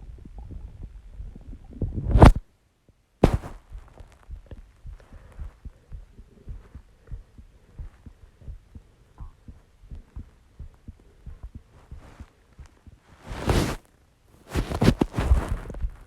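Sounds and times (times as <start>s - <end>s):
heartbeat thuds: 3.2s - 13.8s, 14.5s - 16.0s.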